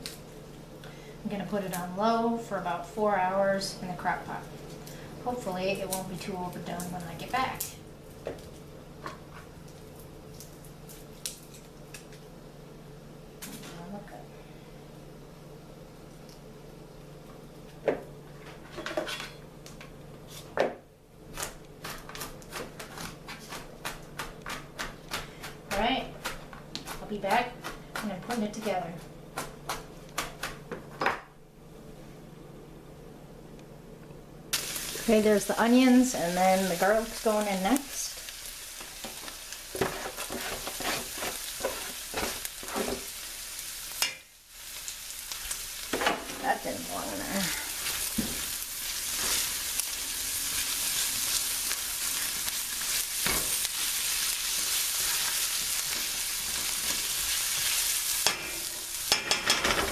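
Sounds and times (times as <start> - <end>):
onions frying in hot oil: 0.0 - 20.4, 34.5 - 59.9
spoon scraping a pan: 18.6 - 19.4, 39.0 - 43.1
utensils and dishes knocking: 59.1 - 59.9.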